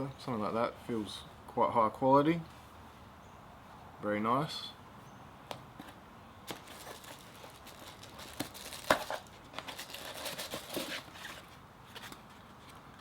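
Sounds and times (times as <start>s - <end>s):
packaging crinkling and rustling: 6.5s - 12.4s.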